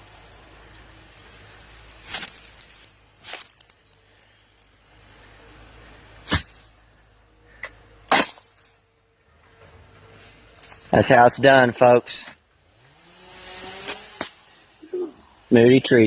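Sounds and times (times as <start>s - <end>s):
tree limbs cracking and crashing: 1.7s - 3.8s.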